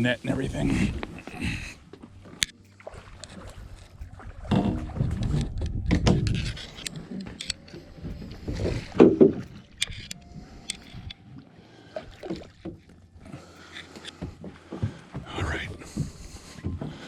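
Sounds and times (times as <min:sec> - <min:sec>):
knocks and bumps on boat: 0:04.1 - 0:07.1, 0:07.8 - 0:09.6, 0:14.2 - 0:17.0.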